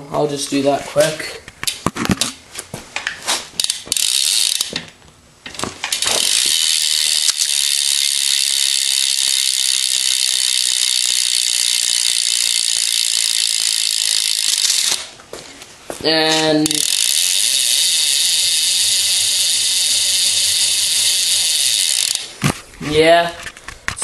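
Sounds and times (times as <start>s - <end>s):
bicycle hub freewheeling buzz: 3.6s - 4.8s, 5.9s - 15.1s, 16.4s - 22.5s.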